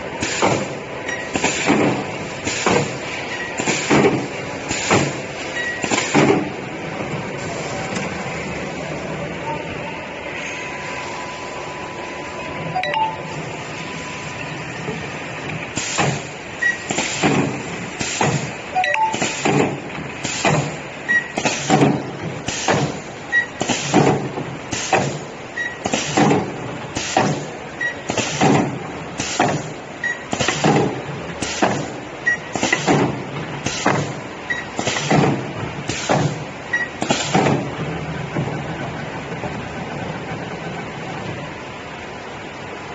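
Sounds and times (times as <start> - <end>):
welding machine clanking strokes: 0.2 - 6.5, 15.6 - 38.6.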